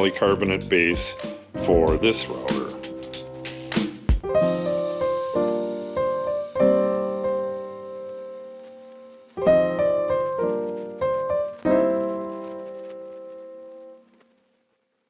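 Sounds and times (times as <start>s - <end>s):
solo piano chords: 4.2s - 14.1s.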